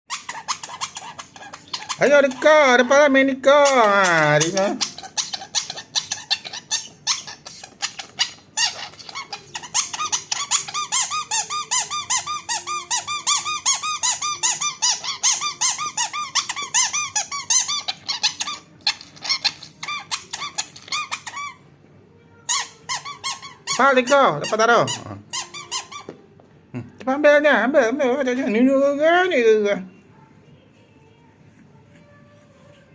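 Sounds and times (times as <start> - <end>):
squeaky toy squeaking: 0.1 - 21.7, 22.4 - 26.2.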